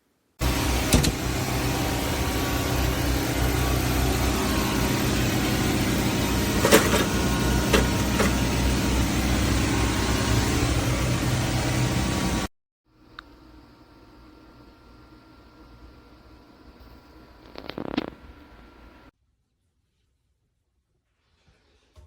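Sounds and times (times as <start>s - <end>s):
car engine running: 0.4s - 12.5s.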